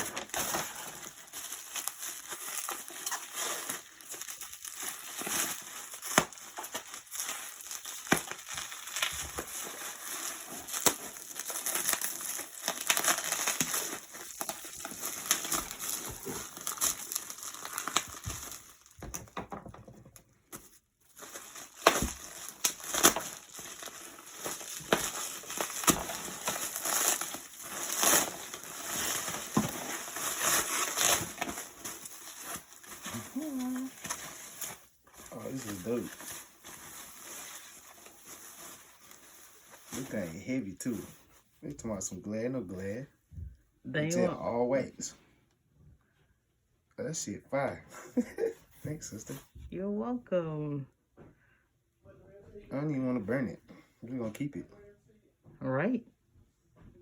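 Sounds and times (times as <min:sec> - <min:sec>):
wrapping paper crinkling: 0:00.0 - 0:19.2, 0:20.5 - 0:41.4.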